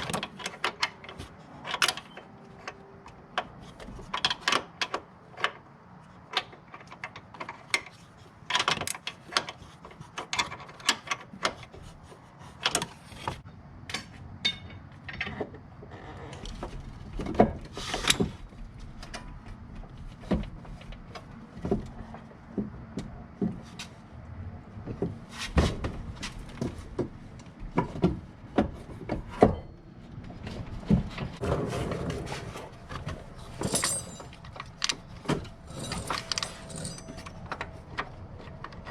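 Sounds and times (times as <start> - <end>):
hand tools clicking and scraping: 0.0 - 13.4, 30.5 - 38.9.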